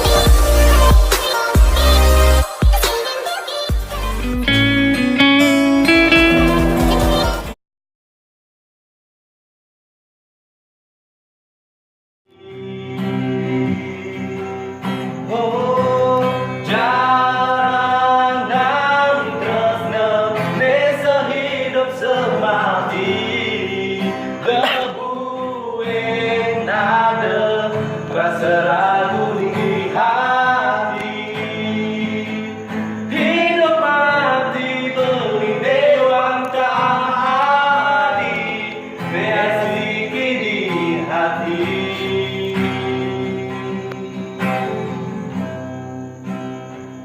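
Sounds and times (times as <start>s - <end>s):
instrumental backing: 0.0s - 7.6s
person singing long sliding notes: 4.2s - 7.5s.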